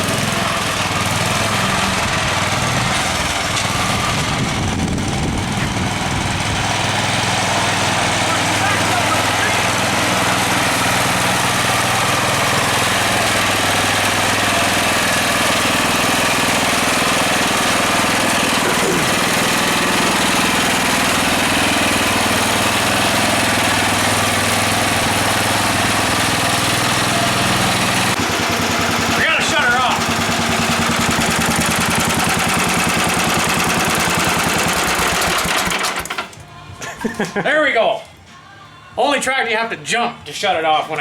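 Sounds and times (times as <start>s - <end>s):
garden tractor engine running: 0.0s - 36.7s.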